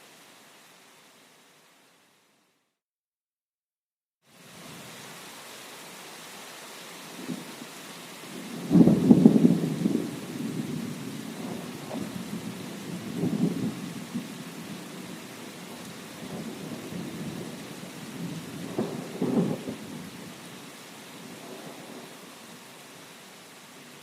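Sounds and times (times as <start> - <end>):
steady rain: 0.0 - 2.8, 4.2 - 24.0
distant thunder rolling: 8.5 - 15.1, 18.2 - 20.1.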